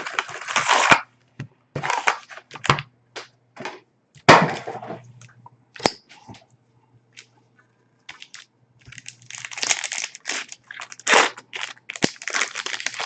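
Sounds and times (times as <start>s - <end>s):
foil wrappers crinkling and tearing: 0.0s - 1.1s, 1.8s - 2.8s, 8.1s - 13.0s.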